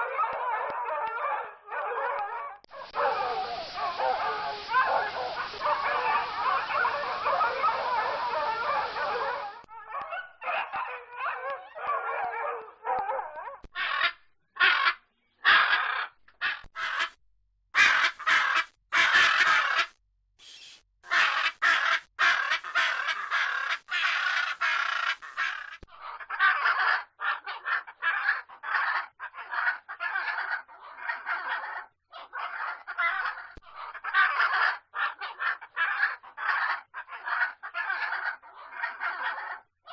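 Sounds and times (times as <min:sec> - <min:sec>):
dogs yelping: 0:00.0 - 0:14.8, 0:21.1 - 0:39.9
macaw squawking: 0:03.0 - 0:09.4, 0:13.8 - 0:17.2, 0:17.8 - 0:30.5.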